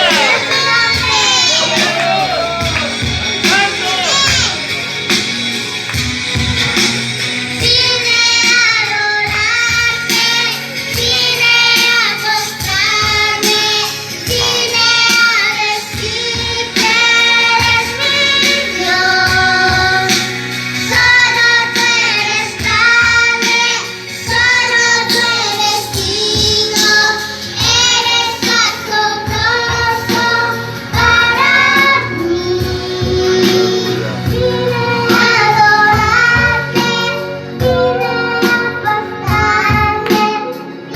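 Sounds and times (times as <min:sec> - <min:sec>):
girl singing: 0:00.0 - 0:02.0, 0:20.9 - 0:40.9
instrumental backing music: 0:00.0 - 0:40.9.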